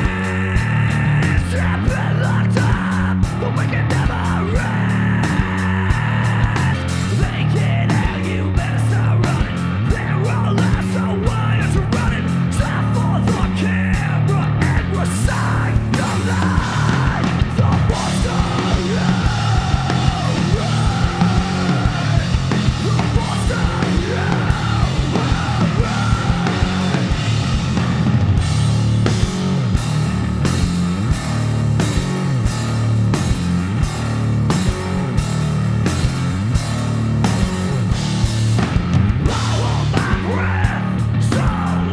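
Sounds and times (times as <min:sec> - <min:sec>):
sung vocal: 0:00.0 - 0:28.6, 0:39.2 - 0:41.9
live rock band playing: 0:00.0 - 0:41.9
drum beat: 0:14.8 - 0:40.4.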